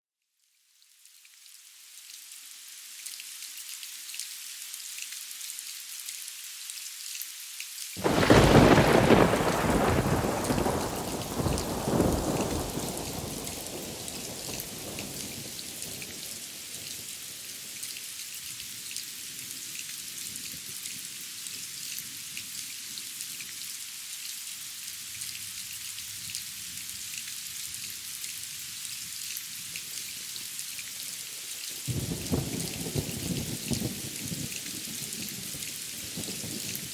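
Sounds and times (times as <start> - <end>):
steady rain falling: 0.5 - 36.9
loud thunderclap rolling: 8.0 - 15.9.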